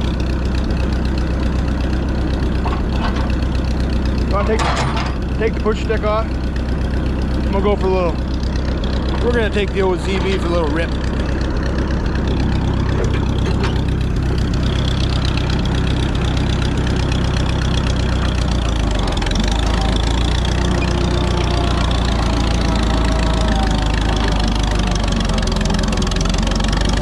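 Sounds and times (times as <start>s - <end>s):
tractor engine running: 0.0s - 27.0s.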